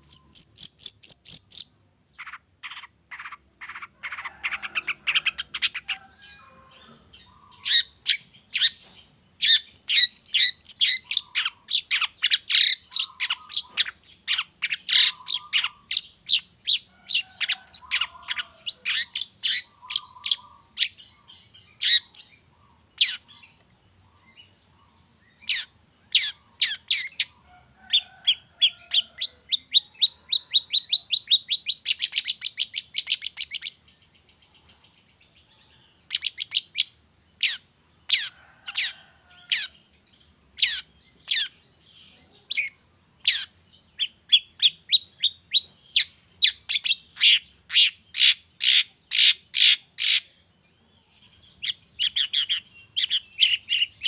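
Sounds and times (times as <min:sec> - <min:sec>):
bird sharp high calls: 0:00.0 - 0:23.6, 0:40.6 - 0:41.6, 0:42.4 - 0:50.4.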